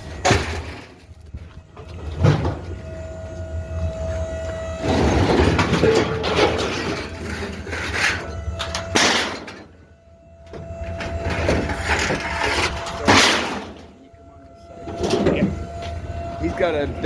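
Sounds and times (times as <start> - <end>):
scrap metal clattering and banging: 0.0 - 9.8, 10.5 - 14.0, 14.8 - 16.7.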